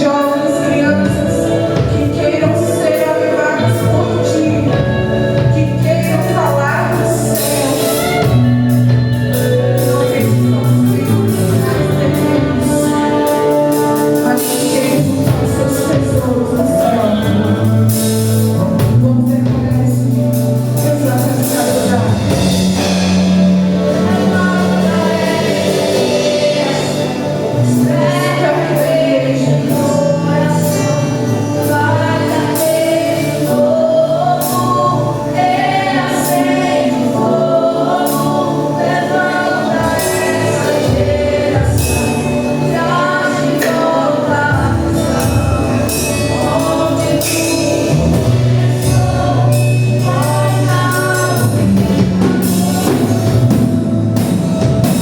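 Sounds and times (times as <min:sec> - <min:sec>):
choir singing gospel: 0:00.0 - 0:55.0
instrumental accompaniment: 0:00.0 - 0:55.0.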